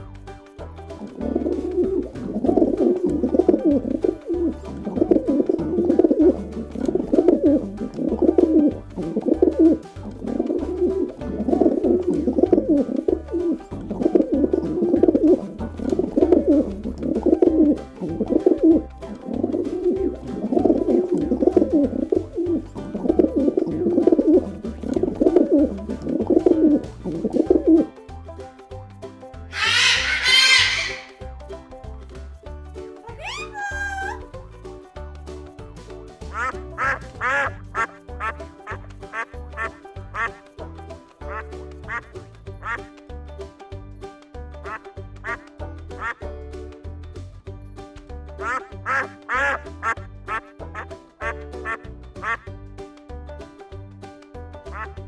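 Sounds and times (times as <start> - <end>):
pigeons cooing: 29.6 - 31.1.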